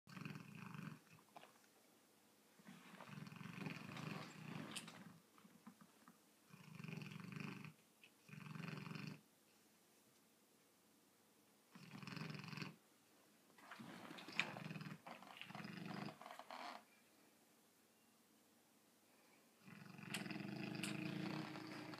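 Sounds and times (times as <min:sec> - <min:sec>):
dog snoring: 0:00.1 - 0:01.2, 0:02.7 - 0:05.0, 0:06.5 - 0:09.2, 0:11.7 - 0:12.8, 0:14.3 - 0:16.8, 0:19.6 - 0:21.9.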